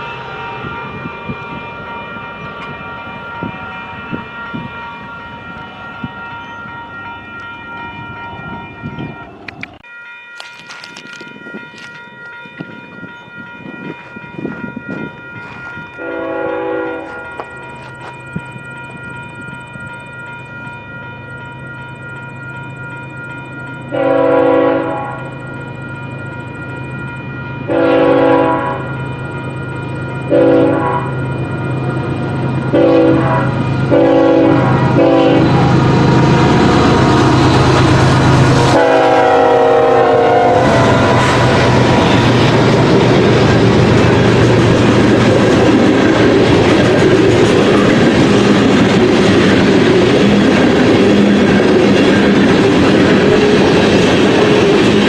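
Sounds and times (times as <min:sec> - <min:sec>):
train rumble: 0:00.0 - 0:55.0
locomotive air horn blasts: 0:16.0 - 0:17.5, 0:23.9 - 0:25.3, 0:27.7 - 0:28.9, 0:30.3 - 0:31.2, 0:32.7 - 0:35.9, 0:38.6 - 0:42.3.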